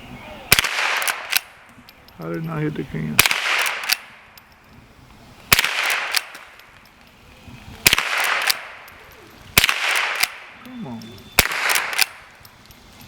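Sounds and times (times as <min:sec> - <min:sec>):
rifle shots: 0:00.5 - 0:01.7, 0:03.2 - 0:04.2, 0:05.5 - 0:06.6, 0:07.8 - 0:08.9, 0:09.5 - 0:10.6, 0:11.4 - 0:12.4.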